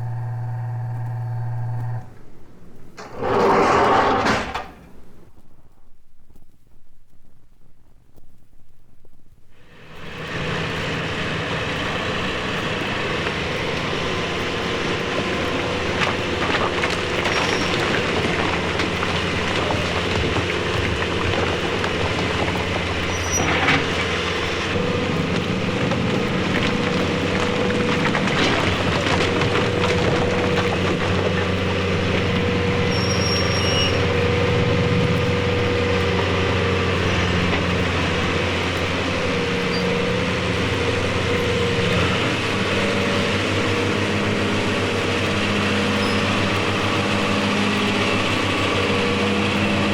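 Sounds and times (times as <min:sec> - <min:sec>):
heavy machine humming: 0:00.0 - 0:05.0, 0:09.6 - 0:49.9
high squeaks: 0:17.0 - 0:20.8, 0:21.6 - 0:24.8, 0:31.2 - 0:35.8, 0:45.8 - 0:47.4.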